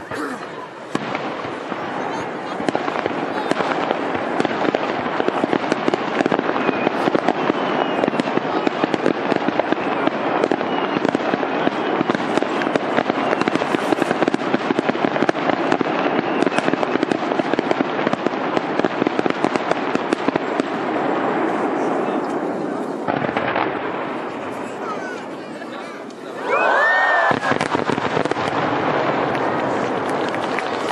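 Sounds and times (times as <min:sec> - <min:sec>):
fireworks crackling pops: 0:00.0 - 0:30.9.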